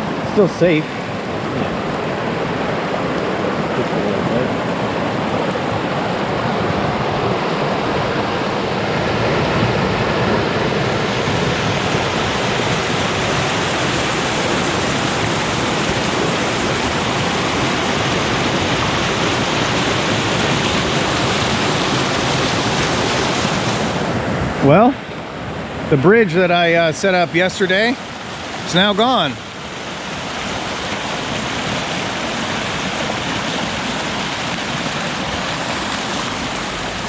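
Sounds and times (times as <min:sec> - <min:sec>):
floodwater roaring: 0:00.0 - 0:37.0.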